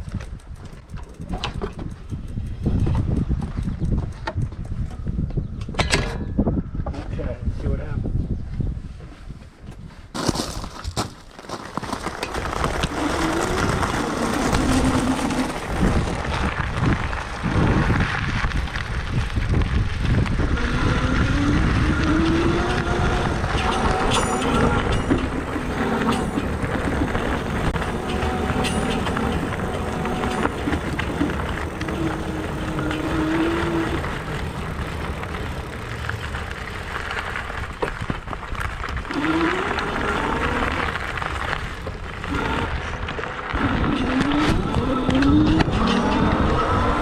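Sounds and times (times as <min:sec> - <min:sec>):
e-bike hub grinding whine: 0:00.0 - 0:05.0, 0:11.6 - 0:47.0
low rumble: 0:12.4 - 0:39.2.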